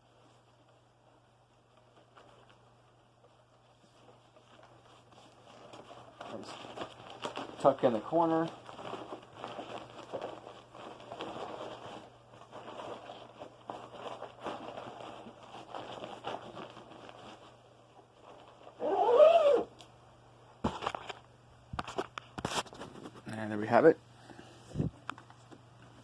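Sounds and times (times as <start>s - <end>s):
rustling vacuum bag handling: 1.6s - 19.8s.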